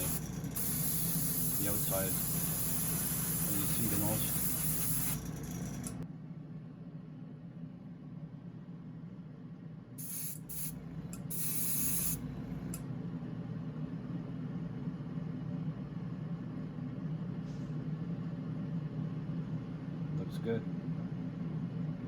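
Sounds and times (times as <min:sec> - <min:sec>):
spray paint hissing bursts: 0:00.0 - 0:05.9, 0:10.0 - 0:12.2
steady low hum: 0:00.0 - 0:22.0.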